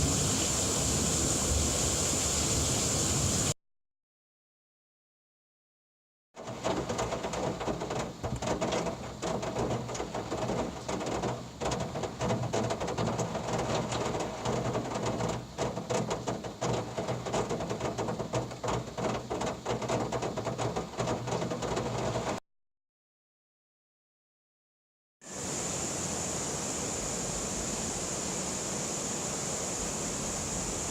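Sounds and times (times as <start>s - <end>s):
heavy rain falling: 0.0s - 3.6s, 6.4s - 22.4s
raindrops splashing on hard surfaces: 0.0s - 3.6s, 6.4s - 22.4s.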